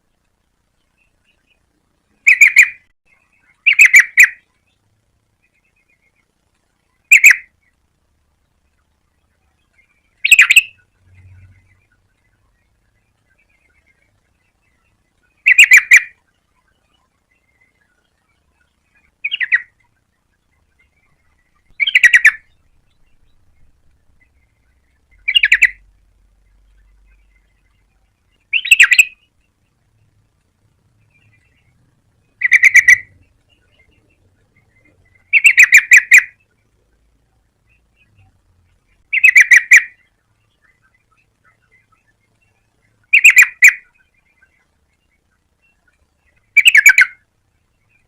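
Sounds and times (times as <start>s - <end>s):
bird chattering calls: 2.2s - 2.9s, 3.5s - 4.5s, 7.0s - 7.5s, 10.2s - 12.0s, 15.3s - 16.2s, 18.9s - 25.9s, 28.4s - 29.2s, 32.3s - 36.5s, 39.0s - 42.1s, 43.0s - 44.6s, 46.4s - 47.2s.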